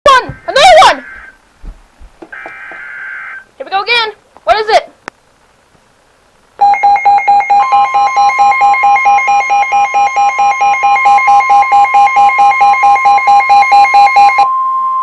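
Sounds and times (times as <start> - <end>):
rapid electronic beeping: 6.6 - 14.4
steady high alarm tone: 6.6 - 15.0.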